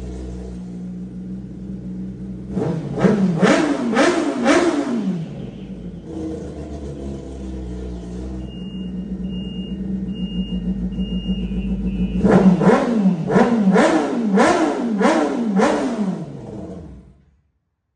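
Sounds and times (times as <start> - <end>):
motorcycle engine idling: 0.0 - 3.0, 4.6 - 13.6
engine revving in throttle blips: 0.0 - 17.4.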